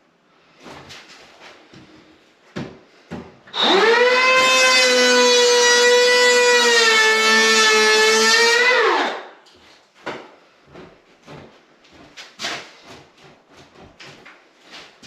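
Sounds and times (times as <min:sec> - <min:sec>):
power planer whining: 0:03.6 - 0:09.3.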